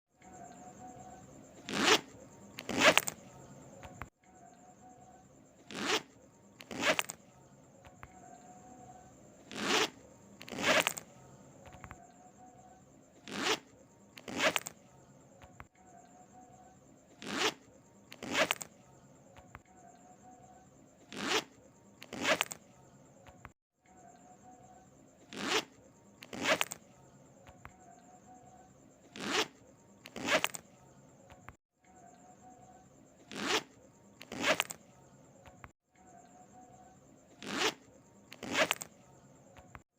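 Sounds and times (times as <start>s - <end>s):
zipper rasping: 1.5s - 3.2s, 5.6s - 7.2s, 9.4s - 11.1s, 13.2s - 14.8s, 17.1s - 18.7s, 21.0s - 22.6s, 25.2s - 26.8s, 29.0s - 30.6s, 33.2s - 34.8s, 37.4s - 39.0s.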